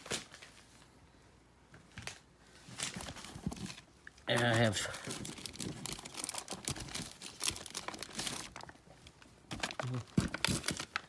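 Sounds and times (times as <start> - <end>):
packaging crinkling and rustling: 1.9 - 11.0.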